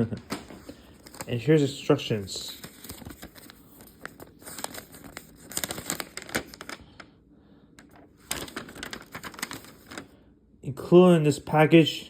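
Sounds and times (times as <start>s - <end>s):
paper and plastic packaging crinkling: 0.0s - 7.1s, 7.8s - 10.2s.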